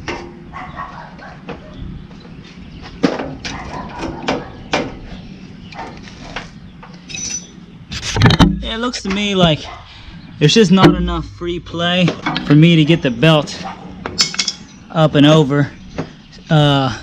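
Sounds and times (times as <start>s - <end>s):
knocks on engine metal parts: 10.8s - 11.4s.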